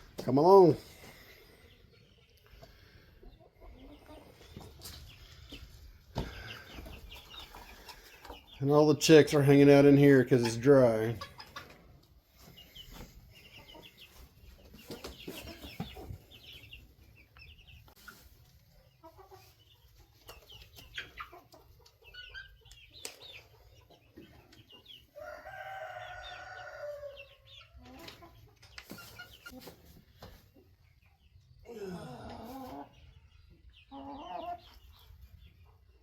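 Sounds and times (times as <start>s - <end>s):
chicks peeping: 0.0s - 31.7s, 32.3s - 36.0s
chickens clucking: 0.0s - 36.0s
long drawn-out chicken call: 25.2s - 27.4s.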